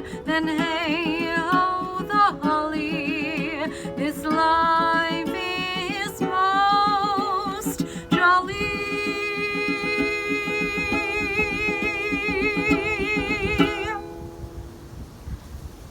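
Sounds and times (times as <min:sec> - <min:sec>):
woman singing with vibrato: 0:00.0 - 0:14.4
strummed ukulele: 0:00.0 - 0:15.0.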